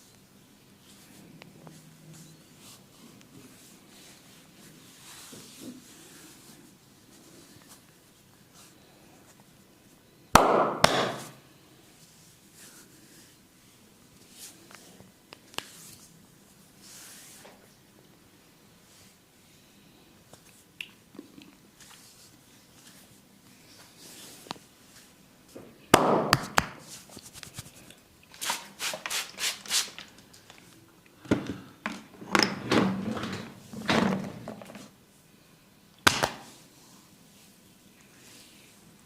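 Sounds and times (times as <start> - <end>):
hands slapping and tapping body: 10.4 - 11.3, 25.9 - 27.7, 36.0 - 36.5.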